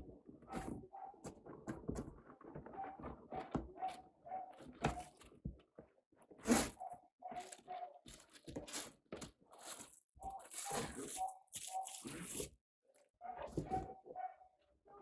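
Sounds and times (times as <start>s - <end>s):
packaging rustling and tearing: 7.4s - 12.5s.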